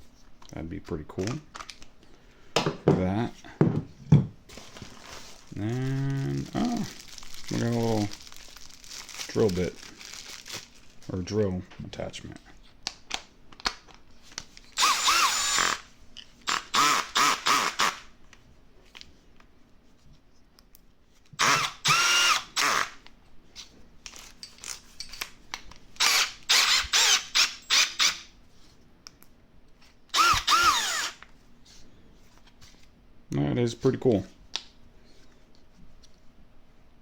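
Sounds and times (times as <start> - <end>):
cordless drill motor whine: 14.8 - 15.8, 16.5 - 18.0, 21.4 - 23.0, 26.0 - 28.2, 30.1 - 31.2.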